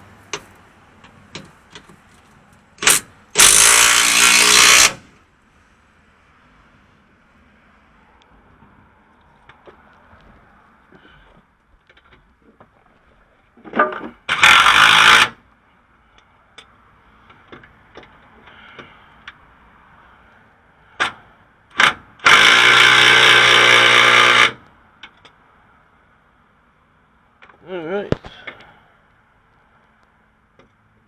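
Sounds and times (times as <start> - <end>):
impact wrench bursts: 2.8 - 5.1, 14.3 - 15.4, 21.0 - 24.6.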